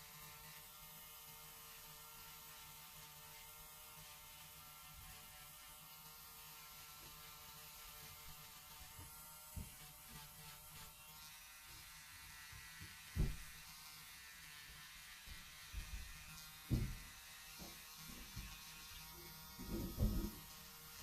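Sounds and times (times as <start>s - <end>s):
electric nail drill whirring: 0.0s - 21.0s
soft handling knocks: 16.7s - 18.6s, 19.6s - 20.4s.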